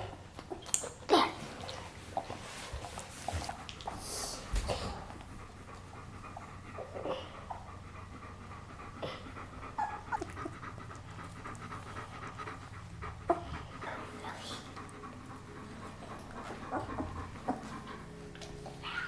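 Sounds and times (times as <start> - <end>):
dog panting: 0.0 - 19.0
puppies squeaking and whimpering: 0.4 - 2.4, 9.6 - 10.8, 15.0 - 19.0.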